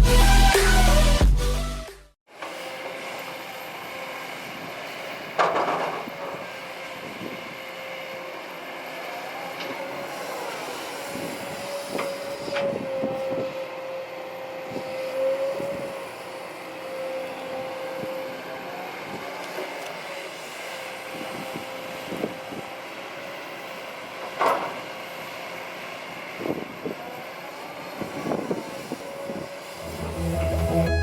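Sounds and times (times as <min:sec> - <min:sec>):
hydraulic whine: 0:00.0 - 0:31.0
excavator diesel engine: 0:29.0 - 0:31.0.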